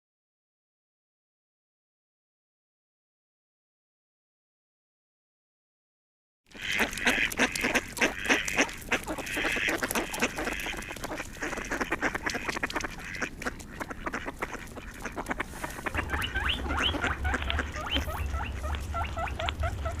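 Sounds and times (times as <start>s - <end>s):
ducks quacking: 6.5s - 20.0s
low hum: 13.4s - 20.0s
short high rising and falling calls: 15.8s - 20.0s.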